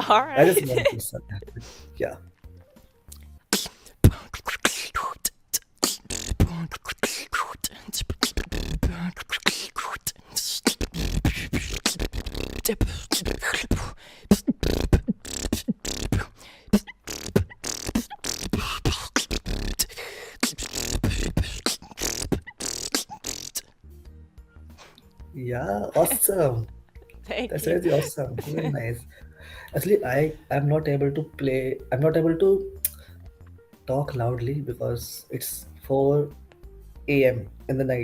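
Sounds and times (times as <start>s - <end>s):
person beatboxing: 3.5s - 23.8s, 27.6s - 28.6s.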